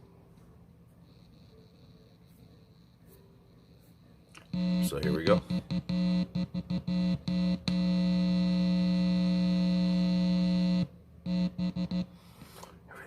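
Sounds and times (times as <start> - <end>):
loud electrical buzz: 4.4 - 12.2.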